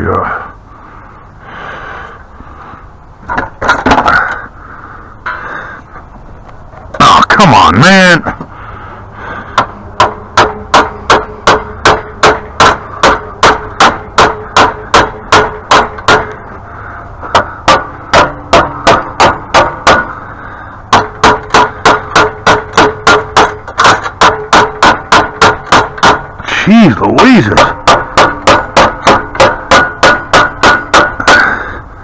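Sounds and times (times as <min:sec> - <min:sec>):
hammer blows on metal: 0:09.5 - 0:16.6, 0:17.2 - 0:31.8.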